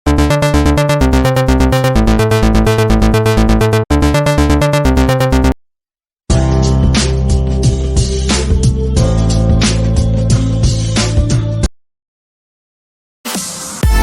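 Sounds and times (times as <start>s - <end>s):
upbeat electronic music: 0.0s - 5.6s, 13.3s - 14.0s
music track: 0.1s - 5.6s.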